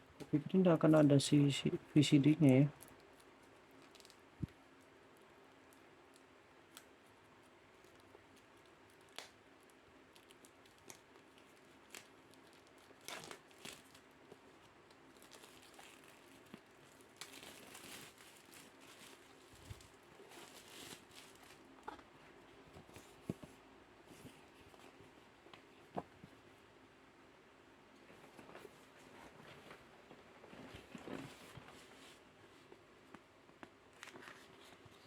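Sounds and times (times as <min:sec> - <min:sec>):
packaging crinkling and rustling: 0:01.9 - 0:22.1, 0:33.9 - 0:35.0.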